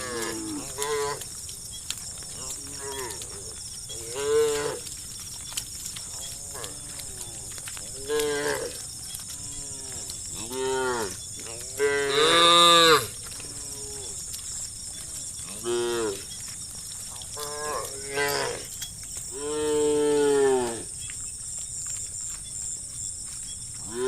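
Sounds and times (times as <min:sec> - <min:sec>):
cattle mooing: 0:02.3 - 0:04.9, 0:06.1 - 0:14.2.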